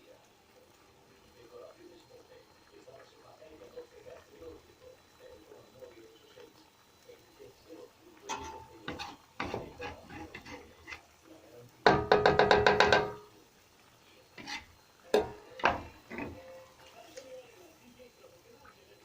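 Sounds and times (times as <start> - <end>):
ringing taps on a pot: 8.3 - 10.5, 11.8 - 13.4, 14.4 - 16.7
utensil knocking on a pot: 11.8 - 13.3, 14.4 - 16.4.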